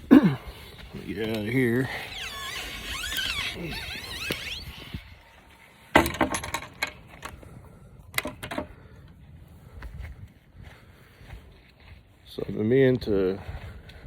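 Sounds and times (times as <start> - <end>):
high gliding squeaks: 1.4 - 5.5
light clicks and knocks: 8.1 - 8.7.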